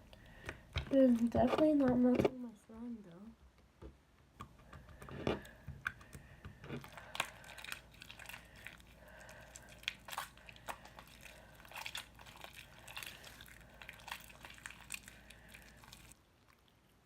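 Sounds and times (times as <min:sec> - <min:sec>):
slime squished by hand: 0:06.8 - 0:16.1.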